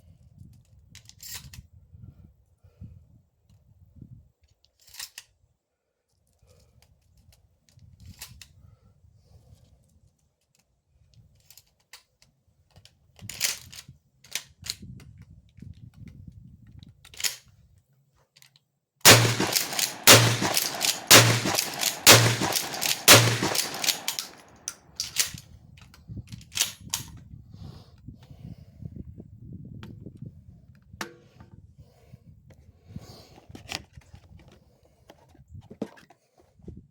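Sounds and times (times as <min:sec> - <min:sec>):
shotgun pump working: 0:19.1 - 0:24.4
shotgun shots: 0:19.1 - 0:24.6
metallic gun handling clicks: 0:19.1 - 0:25.4.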